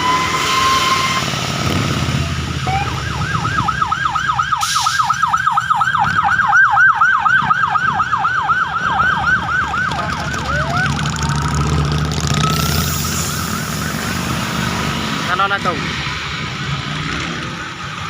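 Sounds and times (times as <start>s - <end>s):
electronic siren yelp: 0.0s - 1.4s, 2.5s - 11.1s
siren slow rising wail: 0.0s - 18.0s
vehicle engine running: 9.4s - 13.5s.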